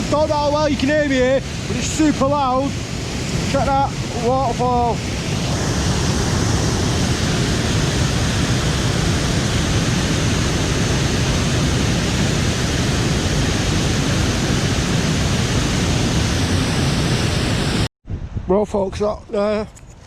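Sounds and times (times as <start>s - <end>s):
waterfall rushing: 0.0s - 17.9s.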